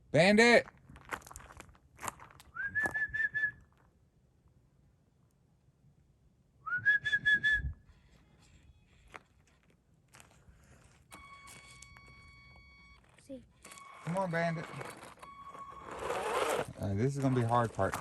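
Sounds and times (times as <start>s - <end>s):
person whistling for dog: 2.5s - 3.7s, 6.6s - 7.8s.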